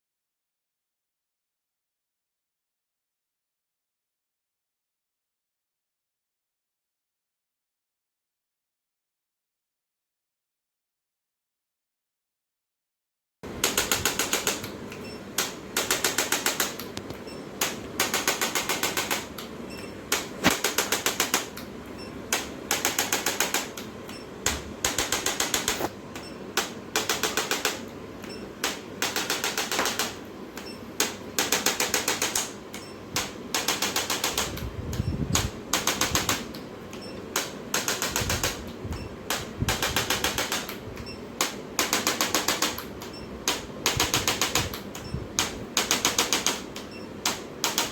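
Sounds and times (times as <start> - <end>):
rapid clicking instrument bursts: 13.5 - 47.9.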